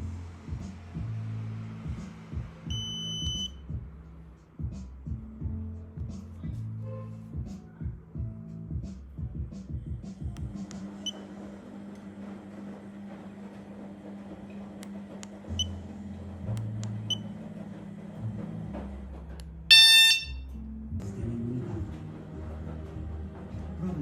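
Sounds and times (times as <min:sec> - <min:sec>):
low background music: 0:00.0 - 0:24.0
loud electronic beep: 0:19.7 - 0:20.4.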